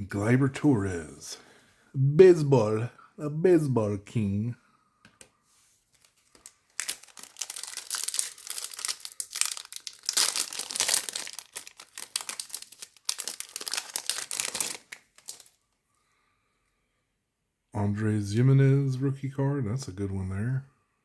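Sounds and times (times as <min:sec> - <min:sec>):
foil wrapper crinkling: 0:05.9 - 0:15.6.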